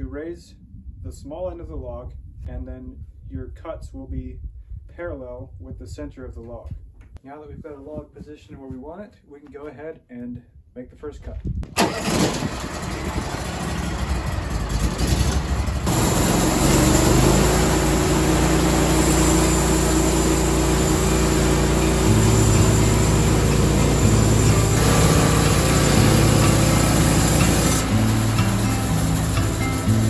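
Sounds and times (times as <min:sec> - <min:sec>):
sawmill engine running: 0:11.8 - 0:30.0
bandsaw blade cutting: 0:15.9 - 0:30.0.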